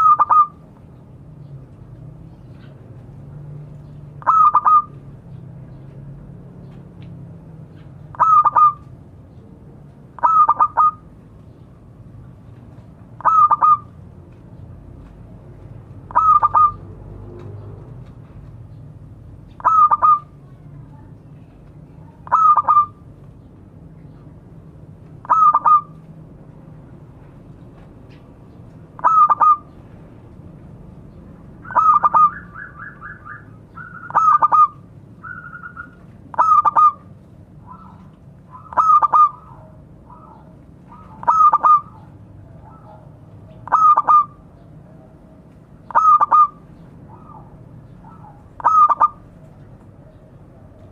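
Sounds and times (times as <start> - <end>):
dove cooing: 0.0 - 0.6, 4.2 - 5.0, 8.1 - 8.9, 10.2 - 11.0, 13.2 - 13.9, 16.1 - 17.6, 19.6 - 20.4, 22.2 - 23.0, 25.2 - 26.0, 29.0 - 29.7, 31.6 - 45.2, 45.8 - 50.9.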